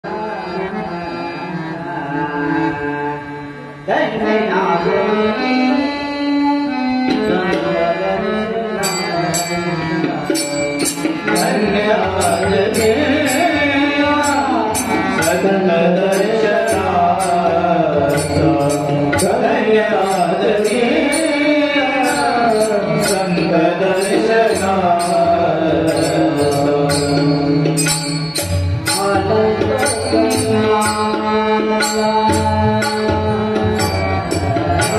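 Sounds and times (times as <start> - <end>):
man singing: 0.0 - 34.9
held instrumental notes: 4.6 - 34.9
small hand cymbals: 22.0 - 29.2.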